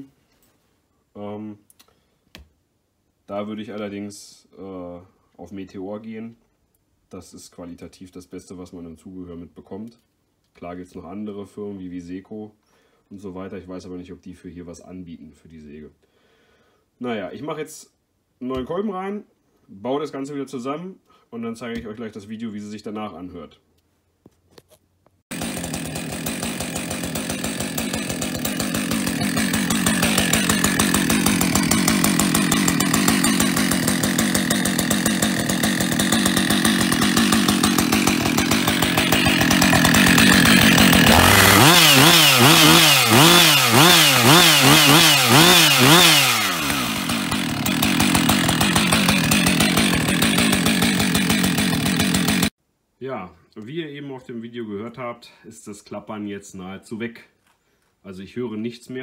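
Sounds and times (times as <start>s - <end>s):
chainsaw engine idling and revving: 25.3s - 52.5s.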